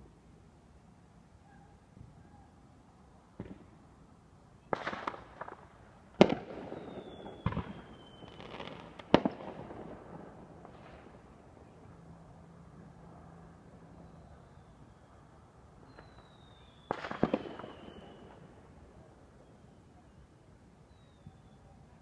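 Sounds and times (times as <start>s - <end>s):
fireworks bangs: 4.7s - 11.2s, 15.9s - 18.5s
fireworks crackling: 4.7s - 11.6s, 15.8s - 18.8s
firework whistle: 6.2s - 9.3s, 14.0s - 18.7s, 19.3s - 21.9s.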